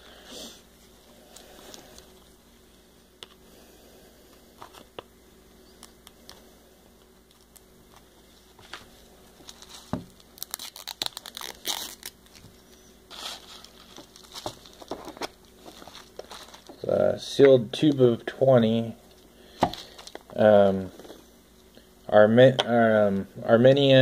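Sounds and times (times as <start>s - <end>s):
packaging crinkling and tearing: 7.3s - 16.9s, 19.6s - 20.4s.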